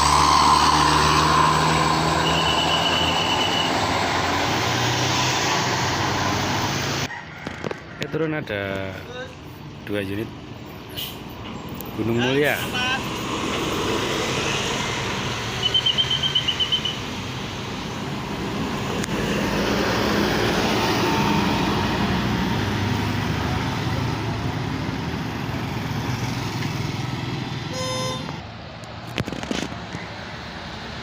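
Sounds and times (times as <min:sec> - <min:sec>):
bus engines droning: 0:00.0 - 0:31.0
short horn toot: 0:27.7 - 0:28.4.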